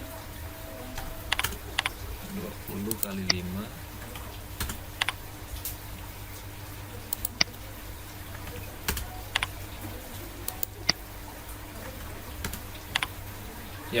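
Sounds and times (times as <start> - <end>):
steady low hum: 0.0 - 14.0
keyboard keystrokes: 1.0 - 2.0, 4.1 - 5.2, 7.1 - 7.6, 8.4 - 9.6, 12.0 - 13.2.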